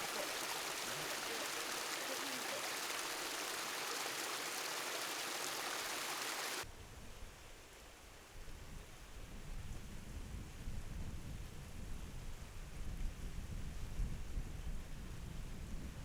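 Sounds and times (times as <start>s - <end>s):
rushing mountain water: 0.0s - 6.6s.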